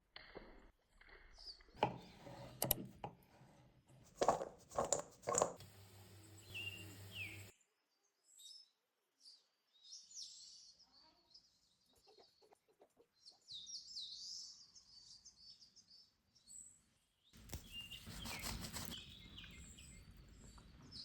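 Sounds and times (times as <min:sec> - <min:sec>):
utensils and dishes clattering: 0:04.1 - 0:05.6
short bird chirps: 0:06.4 - 0:07.5, 0:17.6 - 0:20.2.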